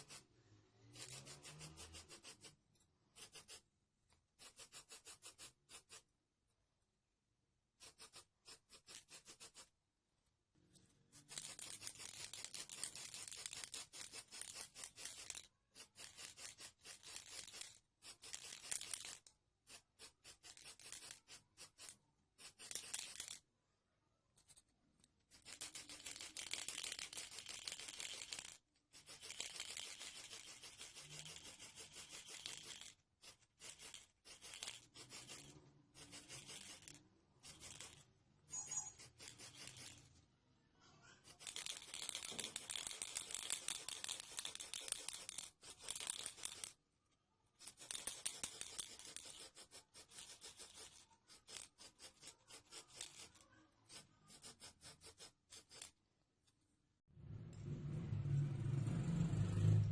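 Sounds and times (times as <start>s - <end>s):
abrasive rubbing strokes: 0.0s - 2.6s.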